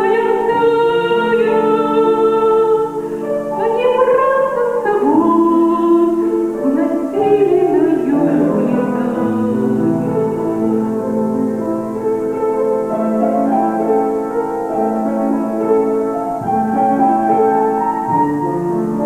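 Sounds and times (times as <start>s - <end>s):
woman singing slow song: 0.0s - 11.3s
instrumental accompaniment: 0.0s - 19.0s.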